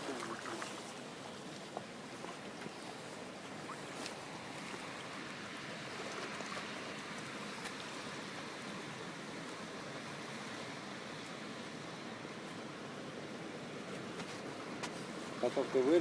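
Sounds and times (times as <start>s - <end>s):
canal water rushing: 0.0s - 16.0s.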